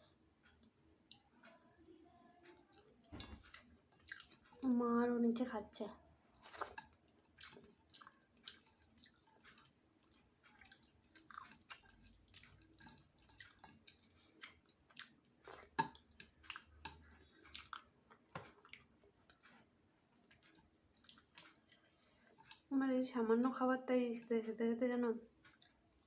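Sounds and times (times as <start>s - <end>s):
person chewing food: 0.0s - 1.7s, 2.4s - 4.6s, 6.3s - 22.7s, 25.2s - 26.0s.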